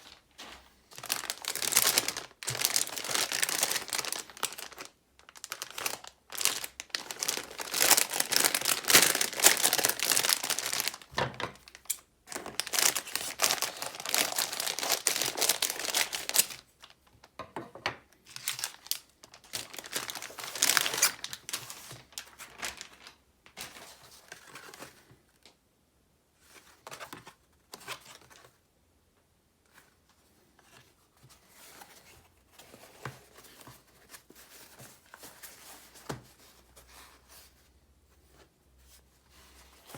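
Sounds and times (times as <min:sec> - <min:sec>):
packaging crinkled and torn open: 0:00.9 - 0:17.0, 0:18.3 - 0:23.8.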